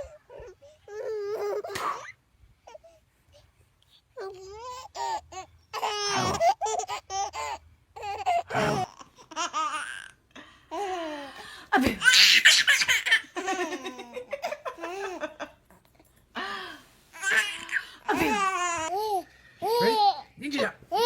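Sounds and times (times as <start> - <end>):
baby laughing: 11.9 - 15.6, 17.2 - 20.2.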